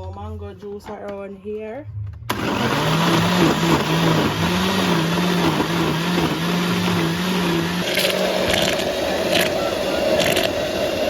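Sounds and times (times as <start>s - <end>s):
blender motor running: 2.3s - 11.0s.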